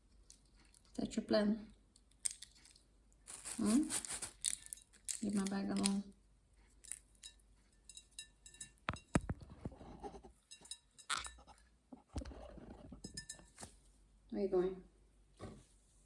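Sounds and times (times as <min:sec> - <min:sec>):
beak and nut clicks and taps: 0:06.8 - 0:09.7.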